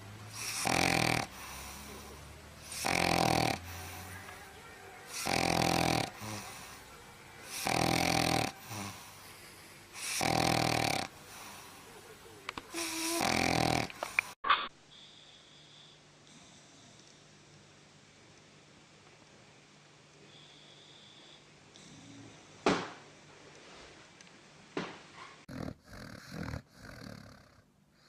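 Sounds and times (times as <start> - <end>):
quiet breathing: 0.0 - 10.3, 10.9 - 17.4, 20.1 - 22.6
person snoring: 0.3 - 4.2, 5.1 - 6.8, 7.5 - 9.2, 10.0 - 11.8, 12.7 - 14.0, 25.5 - 27.6.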